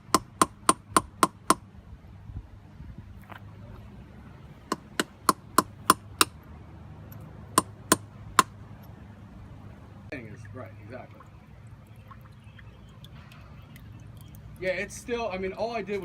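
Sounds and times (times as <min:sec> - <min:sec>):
hammer striking clay pipe: 0:00.0 - 0:01.6, 0:04.7 - 0:06.4, 0:07.6 - 0:08.6.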